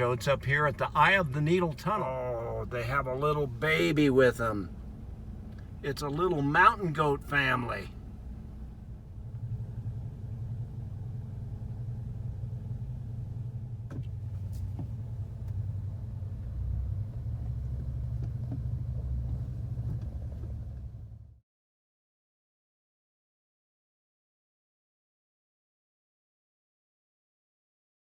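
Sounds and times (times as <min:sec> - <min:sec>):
car engine idling: 0:00.0 - 0:21.4.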